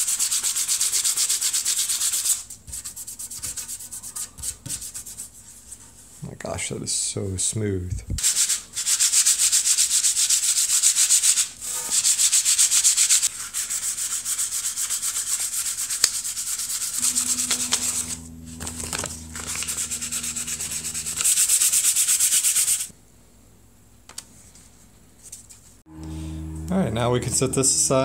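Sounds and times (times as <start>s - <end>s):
sandpaper rubbing on wood: 0.0s - 5.3s, 8.2s - 18.1s, 19.4s - 22.9s.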